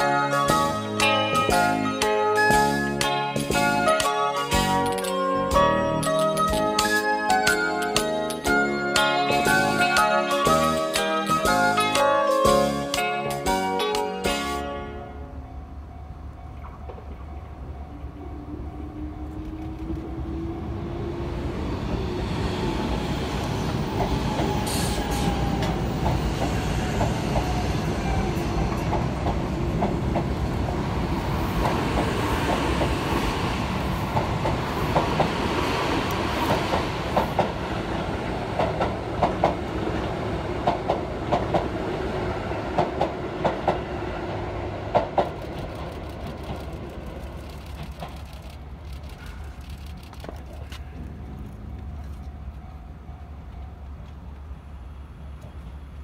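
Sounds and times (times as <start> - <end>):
electric train humming: 0.0 - 56.0
train wheels clacking: 23.4 - 30.6, 34.0 - 41.8, 42.6 - 43.9, 44.8 - 51.0.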